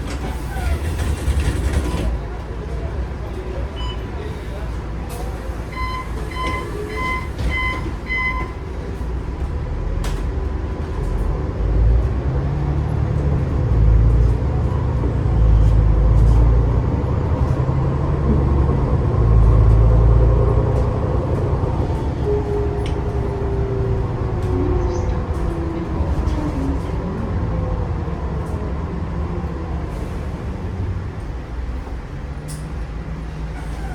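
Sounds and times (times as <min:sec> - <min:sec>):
bus diesel engine pulling hard: 0:00.0 - 0:33.9
short electronic warning beeps: 0:05.7 - 0:08.6.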